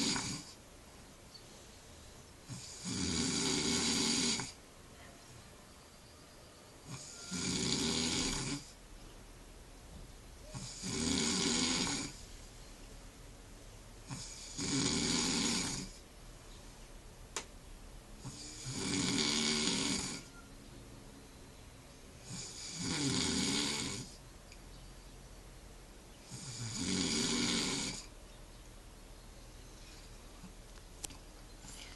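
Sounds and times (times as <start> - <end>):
person snoring: 0.0 - 0.6, 2.5 - 4.6, 6.8 - 8.8, 10.5 - 12.2, 14.0 - 16.0, 18.2 - 20.4, 22.2 - 24.2, 26.3 - 28.1.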